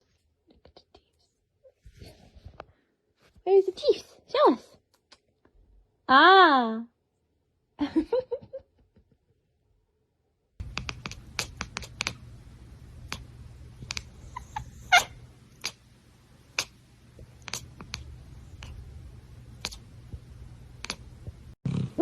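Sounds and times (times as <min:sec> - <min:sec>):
steady low hum: 0:10.6 - 0:21.6
cat meowing: 0:14.2 - 0:15.8.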